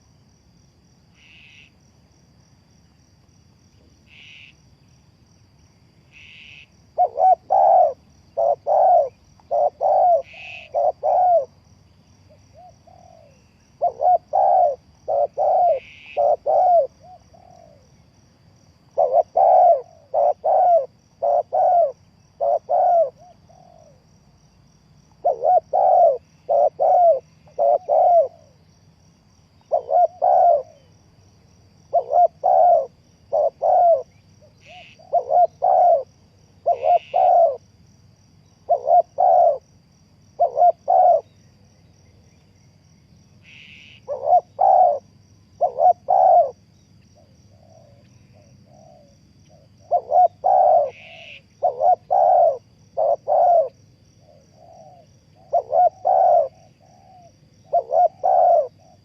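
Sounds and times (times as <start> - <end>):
dove cooing: 6.5 - 11.6, 12.3 - 18.0, 18.9 - 24.1, 25.2 - 28.6, 29.6 - 31.0, 31.8 - 37.6, 38.6 - 39.7, 40.3 - 41.4, 43.5 - 46.6, 47.2 - 59.0
bird chirping: 31.9 - 36.0, 36.7 - 37.6.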